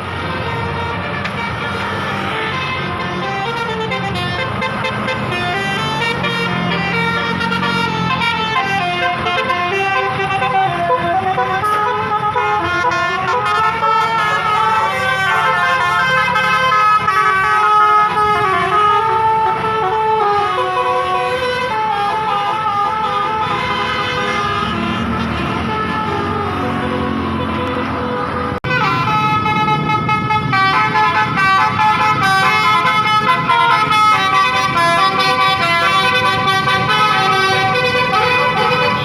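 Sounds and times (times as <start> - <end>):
bus air horns playing a melody: 0.0 - 39.0
bus engine running: 0.0 - 39.0.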